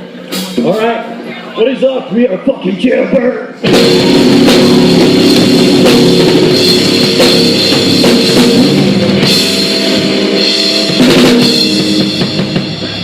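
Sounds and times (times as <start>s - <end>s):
drum and cymbal hits: 3.6s - 13.0s
electric guitar chords: 3.6s - 13.0s.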